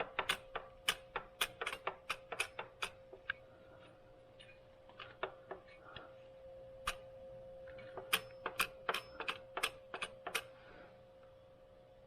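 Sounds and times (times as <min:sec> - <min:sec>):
hard parts clicking and tapping: 0:00.0 - 0:03.4, 0:07.7 - 0:10.5.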